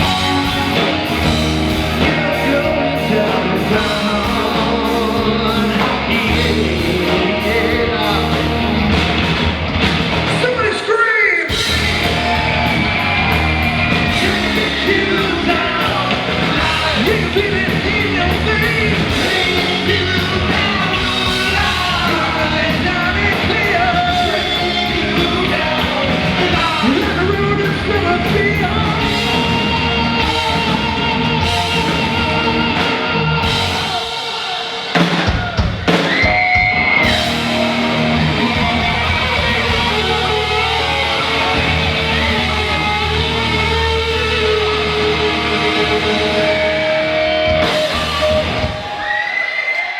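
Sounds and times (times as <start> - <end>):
person singing: 0.0 - 9.2, 10.4 - 49.2
drum kit: 0.0 - 10.6, 11.5 - 49.9
electric guitars: 0.0 - 49.9
rock band playing live: 0.0 - 49.9.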